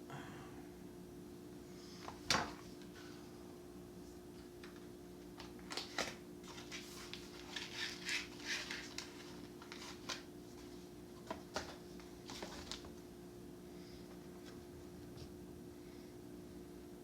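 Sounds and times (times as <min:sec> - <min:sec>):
faint hum: 0:00.0 - 0:17.0
wig rustling and scraping: 0:05.8 - 0:10.9.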